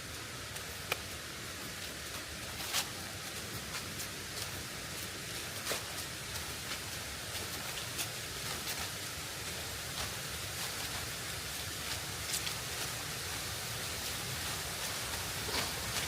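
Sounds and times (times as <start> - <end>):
light ticks: 0.1 - 2.9.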